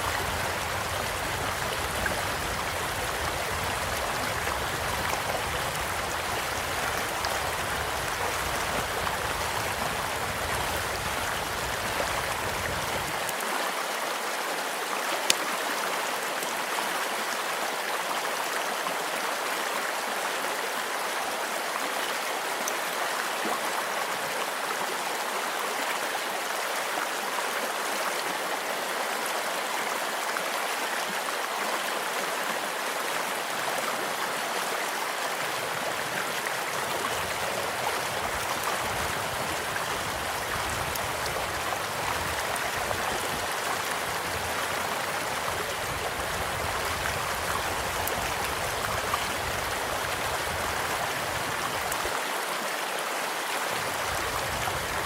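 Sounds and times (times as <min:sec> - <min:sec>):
stream flowing: 0:00.0 - 0:55.0.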